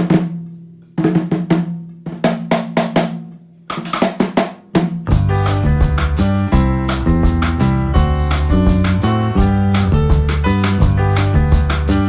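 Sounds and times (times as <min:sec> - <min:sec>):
snare and drum hits: 0:01.0 - 0:12.0
full band backing track: 0:05.1 - 0:12.0.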